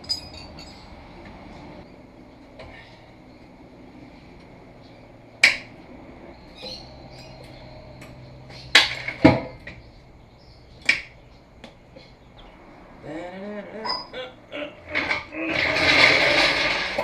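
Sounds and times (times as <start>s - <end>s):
light metal clicks: 0.0s - 12.9s.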